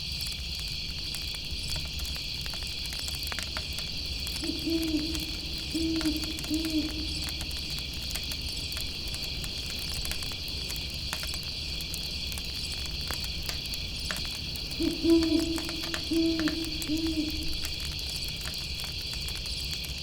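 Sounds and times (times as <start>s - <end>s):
insects chirring: 0.0s - 20.0s
campfire crackling: 0.4s - 20.0s
owl hooting: 4.3s - 7.8s, 14.7s - 17.7s.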